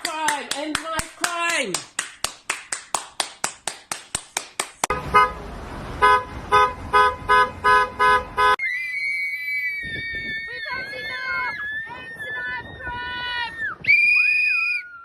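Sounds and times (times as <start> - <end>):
rhythmic hand clapping: 0.0 - 4.9
short horn honks: 4.9 - 5.4, 6.0 - 8.6
steady high whistle-like tone: 8.6 - 10.3.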